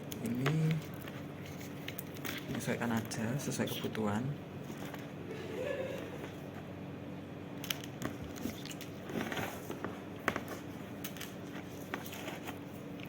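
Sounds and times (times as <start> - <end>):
faint steady hum: 0.0 - 13.0
cable being handled: 0.1 - 4.0, 4.6 - 5.2, 7.6 - 13.0.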